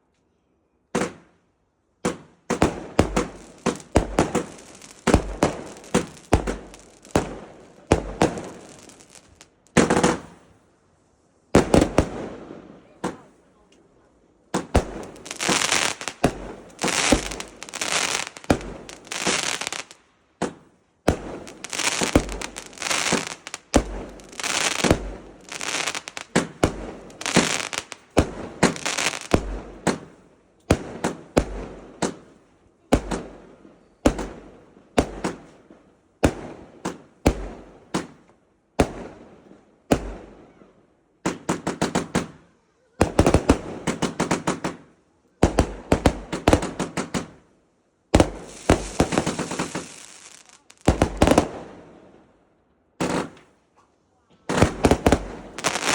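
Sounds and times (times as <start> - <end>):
sharp firework pops: 0.9 - 1.3, 2.0 - 10.4, 11.5 - 12.3, 13.0 - 13.4, 14.5 - 33.4, 34.0 - 35.6, 36.2 - 39.2, 39.9 - 40.3, 41.2 - 42.4, 43.0 - 47.4, 48.1 - 51.6, 53.0 - 53.6, 54.5 - 55.9
firework bangs: 2.0 - 10.4, 11.5 - 13.4, 14.5 - 32.3, 43.0 - 47.4, 48.1 - 51.8, 54.5 - 55.9
firework crackling: 2.1 - 10.5, 11.5 - 12.3, 14.5 - 30.1, 45.4 - 47.4, 48.2 - 51.7, 54.5 - 55.9.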